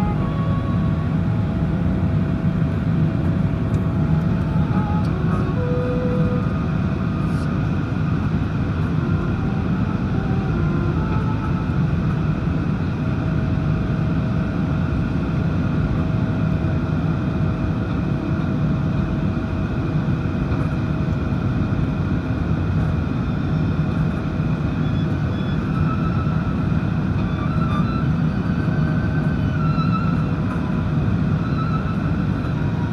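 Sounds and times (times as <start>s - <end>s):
faint whining tones: 0.0s - 13.5s
aircraft low rumble: 0.0s - 32.9s.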